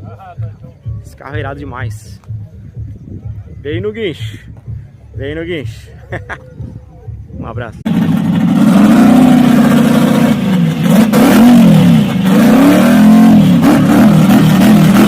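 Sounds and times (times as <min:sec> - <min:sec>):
drag car engine revving: 0:07.8 - 0:15.0.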